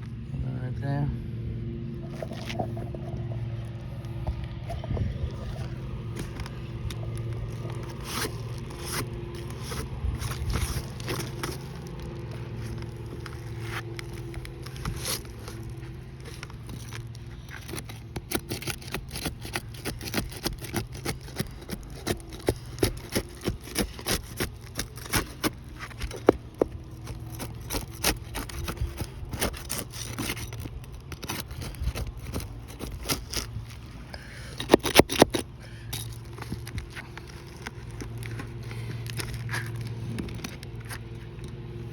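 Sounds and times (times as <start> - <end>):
steady low hum: 0.0 - 41.9
scraping and clicking on roof shingles: 2.1 - 41.9.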